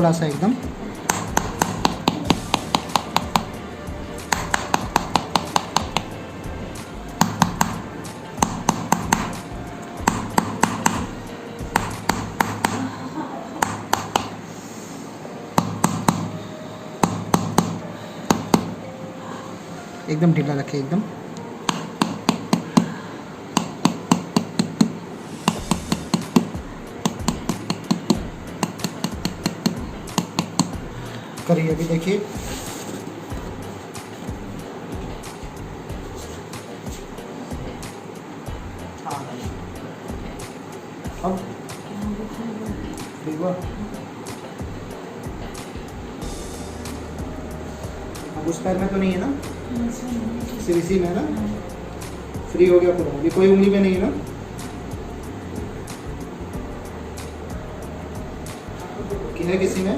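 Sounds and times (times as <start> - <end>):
rapid percussive taps on body: 0.7 - 3.6, 4.2 - 6.2, 6.8 - 12.9, 13.6 - 14.4, 25.5 - 31.0.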